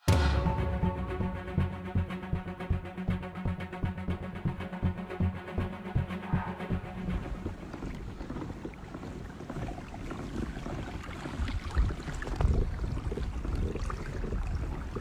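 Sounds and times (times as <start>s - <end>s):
wind rumbling on microphone: 7.2s - 15.0s
water splashes: 7.8s - 15.0s.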